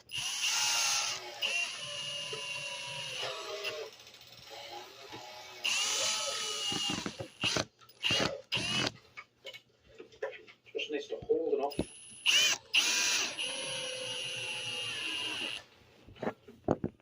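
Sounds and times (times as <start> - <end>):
cordless drill motor whining: 0.0 - 9.0, 11.7 - 15.7.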